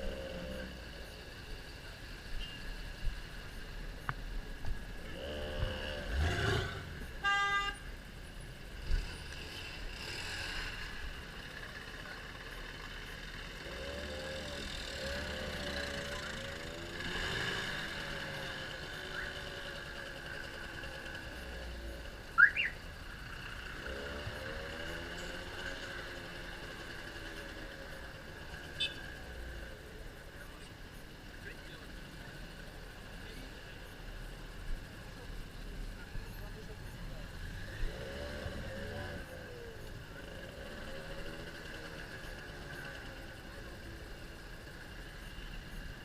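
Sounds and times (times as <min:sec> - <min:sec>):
street traffic: 0:00.0 - 0:46.0
faint voices: 0:11.0 - 0:22.2, 0:24.6 - 0:46.0.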